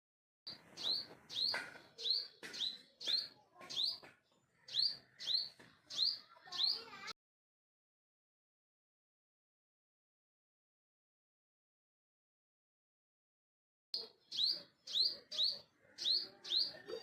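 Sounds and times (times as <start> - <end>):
bird chirping: 0.5 - 7.1, 14.0 - 17.0.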